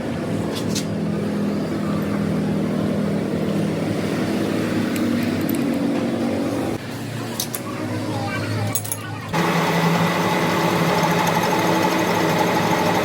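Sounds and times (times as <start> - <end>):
machine humming: 9.3 - 13.0.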